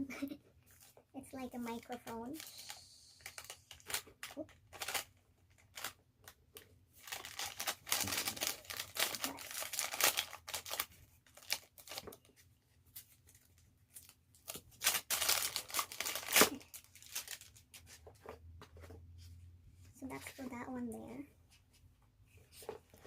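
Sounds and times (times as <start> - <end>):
packaging crinkling and tearing: 2.3 - 12.2, 13.0 - 17.8.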